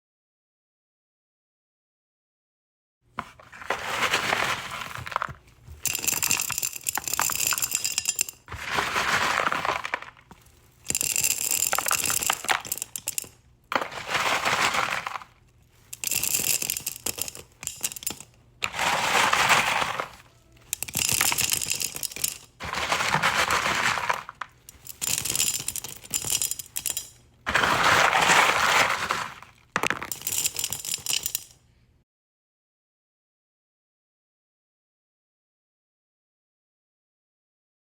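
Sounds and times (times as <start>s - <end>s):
rocks clinking into glass jar: 5.0s - 31.6s.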